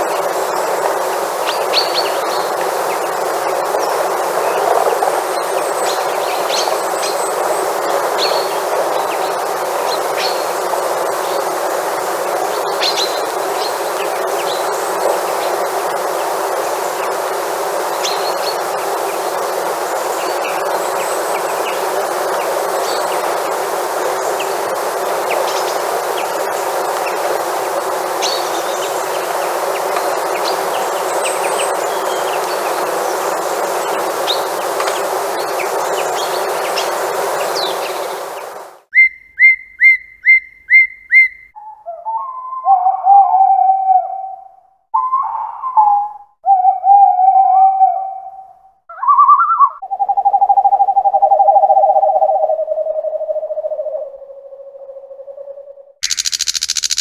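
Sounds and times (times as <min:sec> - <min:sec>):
bird giving loud chirps: 0:56.0 - 0:57.0
birds chirping: 0:56.0 - 0:57.0.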